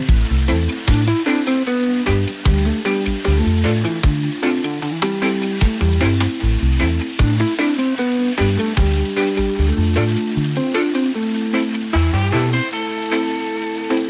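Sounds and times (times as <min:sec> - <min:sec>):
background music with bass line: 0:00.0 - 0:07.8, 0:08.4 - 0:10.7, 0:11.9 - 0:13.0
bright sizzling hiss: 0:00.0 - 0:14.0.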